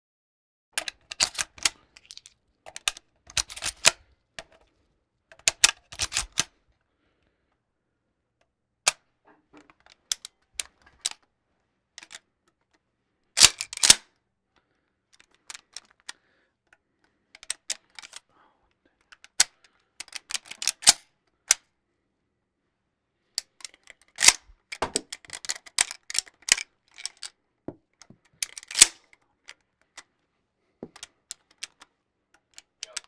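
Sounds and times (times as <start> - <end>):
rifle bolt clicking: 0.8 - 1.8, 5.3 - 6.5, 13.4 - 14.0, 19.3 - 21.6, 23.6 - 27.3, 28.4 - 29.2.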